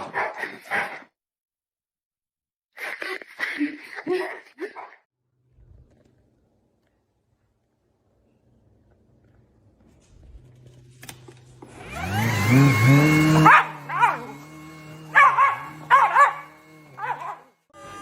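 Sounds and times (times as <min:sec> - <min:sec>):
dog barking: 0:00.0 - 0:01.1, 0:13.4 - 0:14.4, 0:15.1 - 0:17.6
appliance motor whirring: 0:10.9 - 0:18.0.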